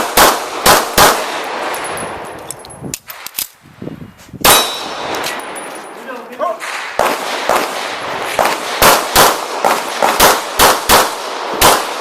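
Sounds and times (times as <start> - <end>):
pistol shots: 0.0 - 1.8, 4.4 - 5.5, 6.6 - 12.0.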